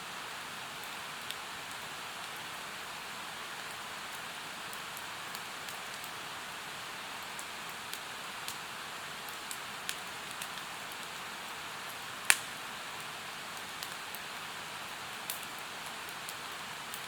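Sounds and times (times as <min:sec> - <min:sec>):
campfire crackling and popping: 0:03.6 - 0:06.3, 0:07.2 - 0:17.0.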